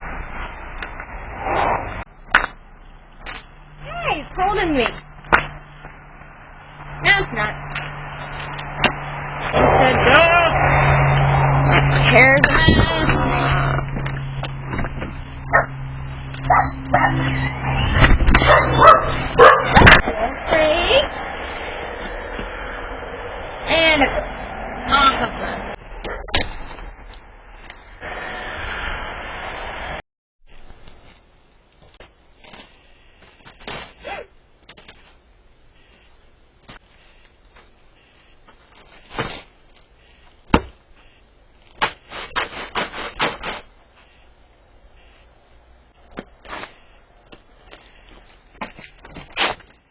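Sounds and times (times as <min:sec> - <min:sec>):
low steady hum: 0:00.0 - 0:43.0
dog barking: 0:15.5 - 0:15.7, 0:16.4 - 0:17.2, 0:18.4 - 0:20.0.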